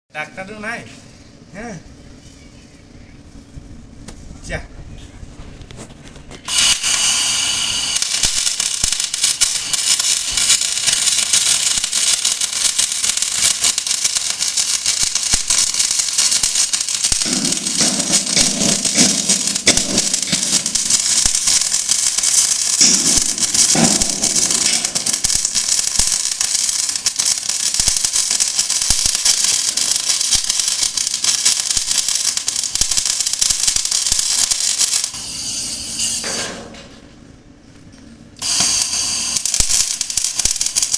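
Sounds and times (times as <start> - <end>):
welding arc crackling and hissing: 6.3 - 36.6, 38.4 - 40.9.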